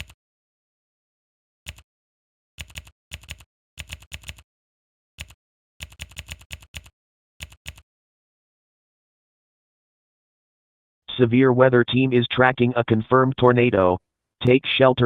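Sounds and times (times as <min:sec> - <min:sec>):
keyboard typing: 0:02.6 - 0:04.4, 0:05.2 - 0:07.8.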